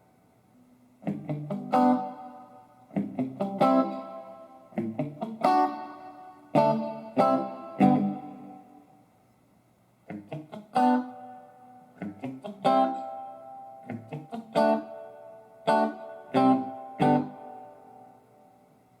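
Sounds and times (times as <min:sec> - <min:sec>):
electric guitar notes and chords: 0:01.0 - 0:08.8, 0:10.1 - 0:18.2.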